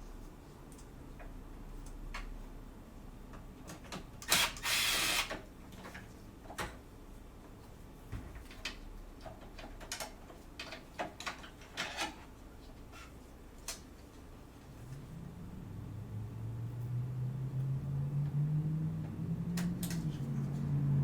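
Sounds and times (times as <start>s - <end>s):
short whirr of screwdriver: 4.3s - 5.4s.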